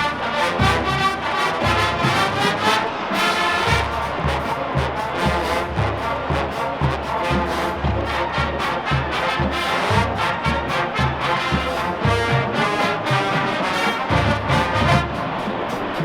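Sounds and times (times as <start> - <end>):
marching band playing: 0.0 - 16.0.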